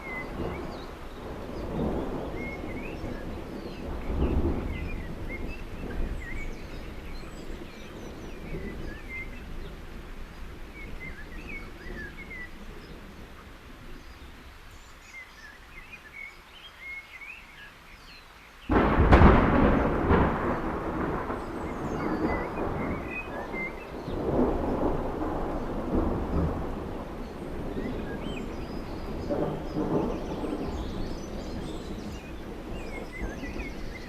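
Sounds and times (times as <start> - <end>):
loud thunderclap: 0.0 - 9.8, 18.7 - 34.0
low thunder rumble: 0.0 - 14.3, 18.7 - 34.0.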